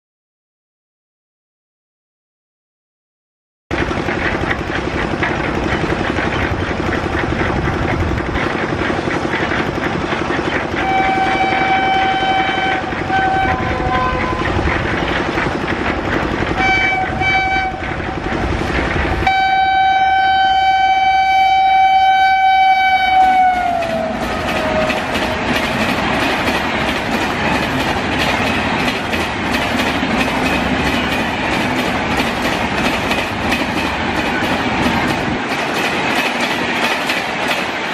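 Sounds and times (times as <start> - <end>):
train wheels clattering over rail joints: 3.7 - 37.9
train horn blasts: 10.8 - 14.6, 16.6 - 18.2, 19.2 - 25.5.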